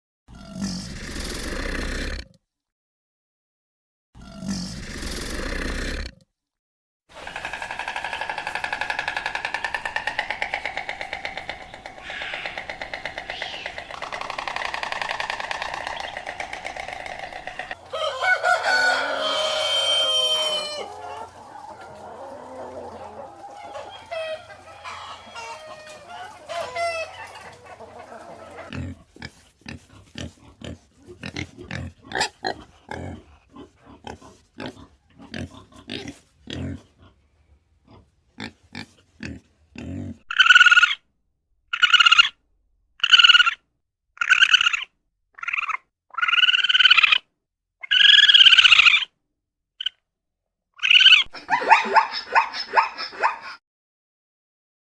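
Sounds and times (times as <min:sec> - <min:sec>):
farm animal calls: 0:07.1 - 0:37.2, 0:37.9 - 0:41.0, 0:41.7 - 0:42.3, 0:43.0 - 0:43.6, 0:44.2 - 0:47.2, 0:47.8 - 0:49.1, 0:50.8 - 0:53.6
short sharp animal calls: 0:07.2 - 0:17.8.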